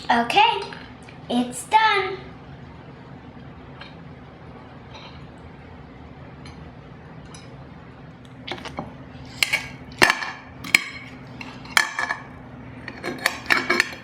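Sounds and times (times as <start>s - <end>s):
cutlery clinking against plate: 9.4s - 14.0s.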